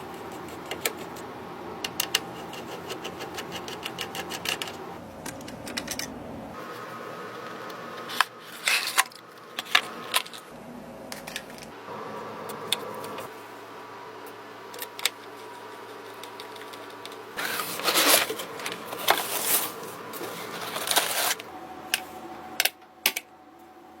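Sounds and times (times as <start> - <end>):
steady hum: 0.0 - 24.0
computer parts clicking: 0.3 - 6.2
scraping and rustling: 15.3 - 21.5.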